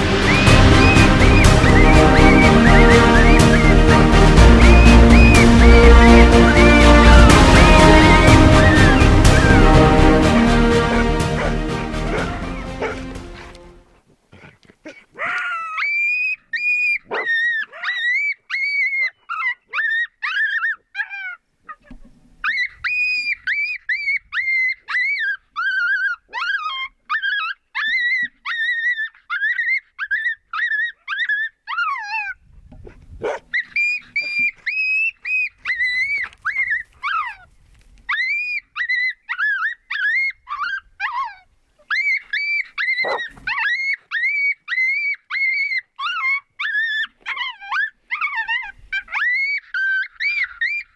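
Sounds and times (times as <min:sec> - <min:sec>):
dog yipping and yelping: 0:04.8 - 0:06.8, 0:14.4 - 0:50.9.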